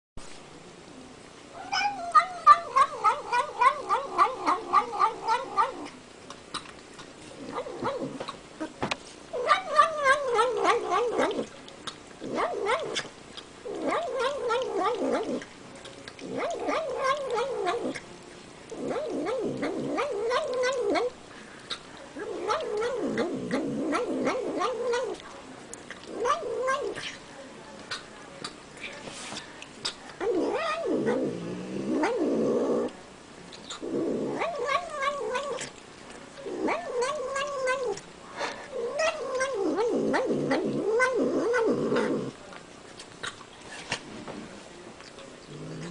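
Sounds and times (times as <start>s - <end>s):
cat moaning: 1.6s - 6.0s, 9.3s - 11.5s, 12.2s - 13.1s, 13.7s - 15.4s, 16.2s - 18.0s, 18.7s - 21.2s, 22.2s - 25.2s, 26.0s - 27.1s, 30.2s - 32.9s, 33.7s - 35.7s, 36.4s - 42.4s.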